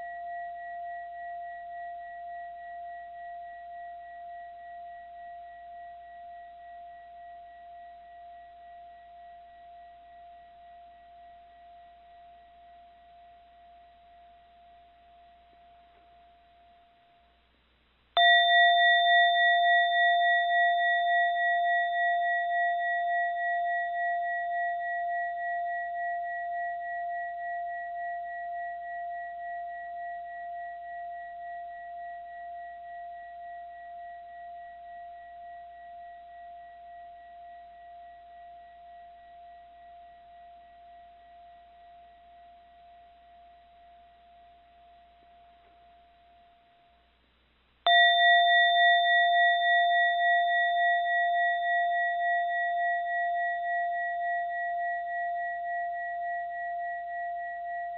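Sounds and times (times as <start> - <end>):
mindfulness bell ringing: 18.2 - 27.2, 47.9 - 57.9.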